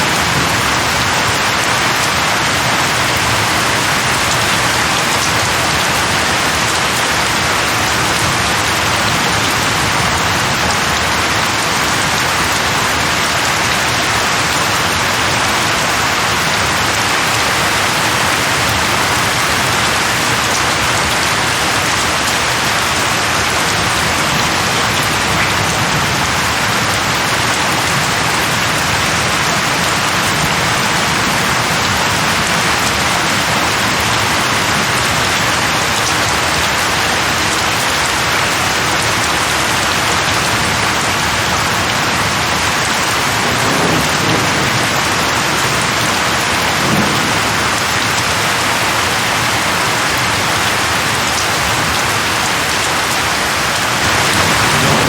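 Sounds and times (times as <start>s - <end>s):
distant thunder rumbles: 0.0s - 11.6s, 43.3s - 49.6s, 54.0s - 55.0s
steady rain: 0.0s - 55.0s.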